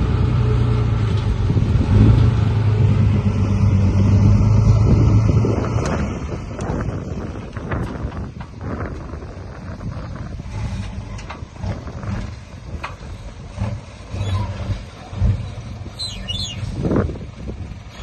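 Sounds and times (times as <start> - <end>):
diesel engine running: 0.0 - 18.0
high squeals: 14.2 - 14.6, 15.9 - 16.8.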